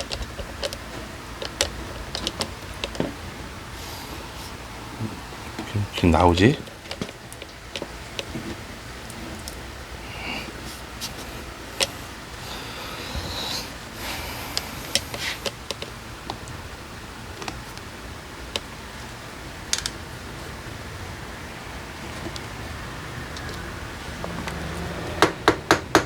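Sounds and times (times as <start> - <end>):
hand tools clicking and knocking: 23.3 - 26.0.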